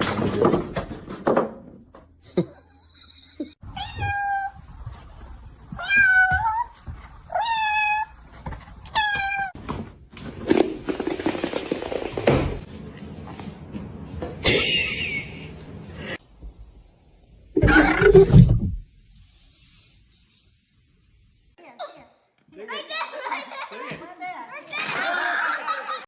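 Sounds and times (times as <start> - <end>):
cat meowing: 3.8 - 4.6, 5.8 - 8.1, 8.9 - 9.6
shuffling noise: 3.9 - 9.4.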